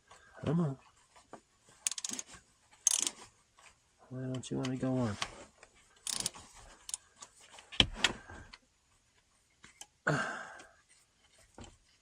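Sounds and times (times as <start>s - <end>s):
metal clicks and knocks of tools: 1.8s - 3.2s, 6.0s - 7.3s
person grunting: 10.1s - 10.6s.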